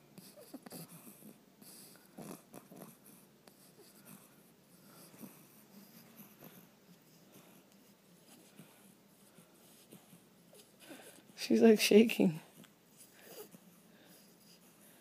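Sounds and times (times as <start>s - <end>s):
pet snoring faintly: 0.1s - 11.4s.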